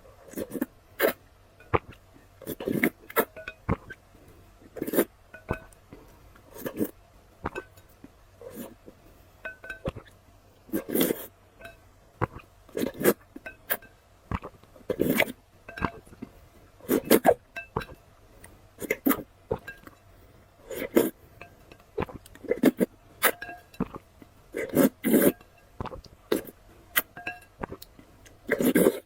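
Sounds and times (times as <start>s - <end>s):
slurps and gulps: 0.2s - 4.0s, 4.6s - 5.2s, 12.2s - 18.0s, 20.6s - 21.2s, 22.0s - 29.0s.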